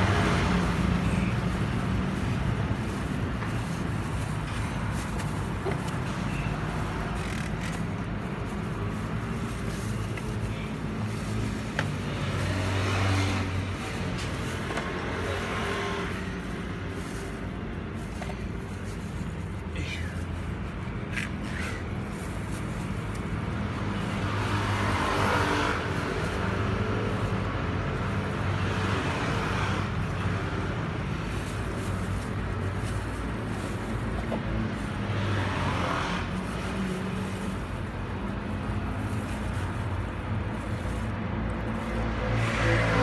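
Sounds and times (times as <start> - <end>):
vehicles passing by: 0.0 - 43.0.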